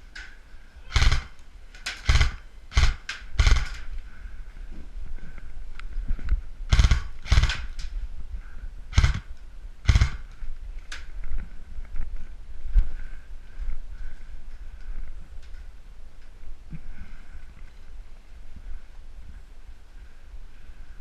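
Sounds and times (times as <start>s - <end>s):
airsoft rifles firing: 0.9s - 3.9s, 6.7s - 7.8s, 8.9s - 10.3s.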